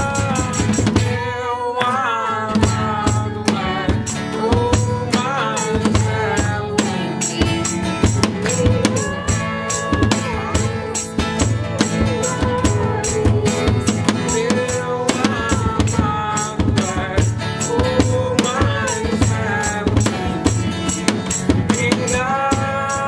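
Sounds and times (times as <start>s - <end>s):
drum kit beat: 0.0s - 1.3s, 2.6s - 23.0s
sliding melodic lead line: 6.0s - 22.8s.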